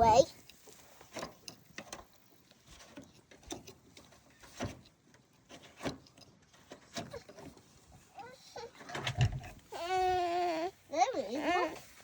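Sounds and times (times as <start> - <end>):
faint handling knocks and clicks: 0.2 - 9.7.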